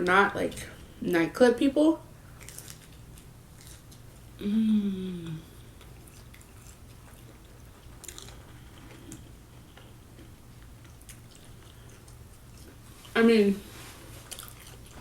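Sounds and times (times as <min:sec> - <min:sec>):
person chewing food: 0:02.2 - 0:13.2, 0:14.0 - 0:15.0.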